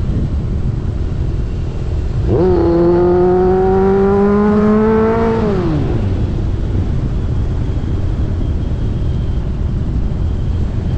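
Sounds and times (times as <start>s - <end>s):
steady low rumble: 0.0s - 10.9s
motor whine: 2.2s - 6.8s.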